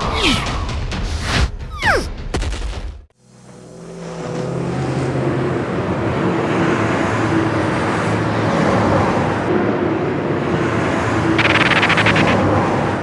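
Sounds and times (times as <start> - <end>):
vehicle engine running: 11.3 - 12.5.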